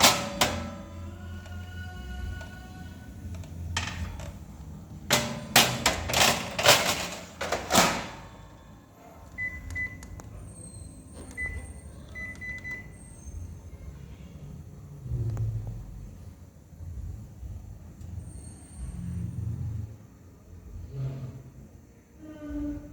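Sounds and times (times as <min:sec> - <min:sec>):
gas stove clicks and knocks: 0:00.0 - 0:00.9, 0:05.1 - 0:08.3.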